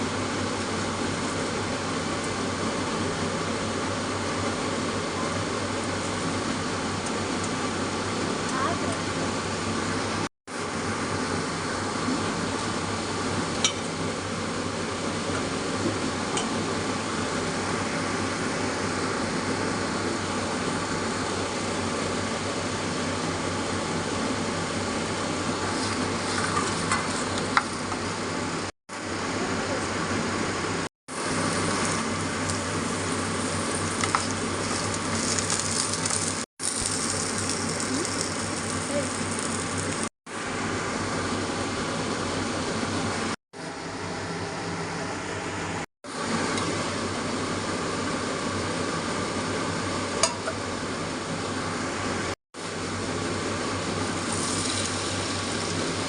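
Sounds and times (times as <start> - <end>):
food sizzling in oil: 25.5 - 28.0, 31.1 - 40.1, 53.1 - 56.0.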